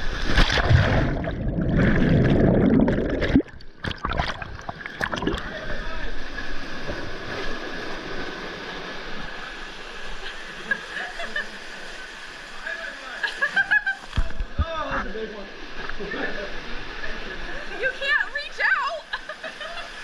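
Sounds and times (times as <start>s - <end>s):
rushing water splashing: 0.0s - 13.0s.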